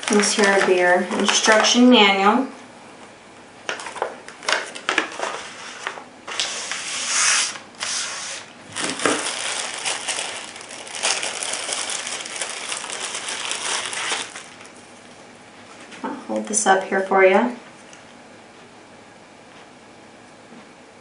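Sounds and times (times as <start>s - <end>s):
packaging crinkling and rustling: 0.0s - 1.9s, 3.7s - 15.1s.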